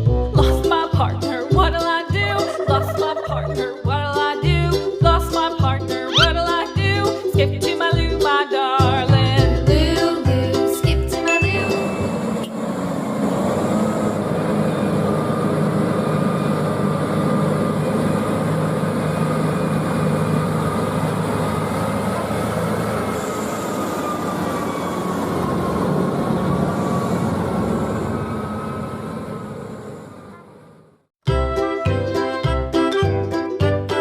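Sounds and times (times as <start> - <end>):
vehicle rumbling and rattling: 9.0 - 31.1
faint whine drifting in pitch: 11.6 - 17.4.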